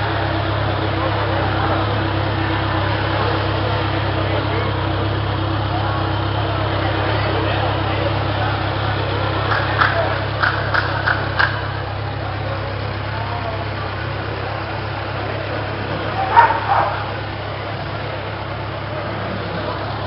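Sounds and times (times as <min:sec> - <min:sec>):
motorcycle engine idling: 0:00.0 - 0:20.0.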